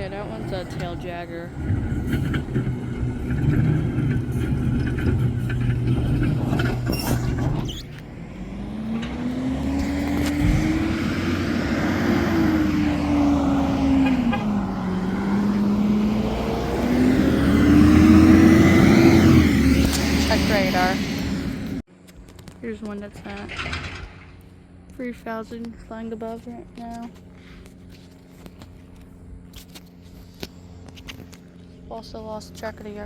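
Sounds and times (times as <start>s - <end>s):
engine revving: 0.0s - 21.9s
vehicle engine humming: 0.0s - 33.0s.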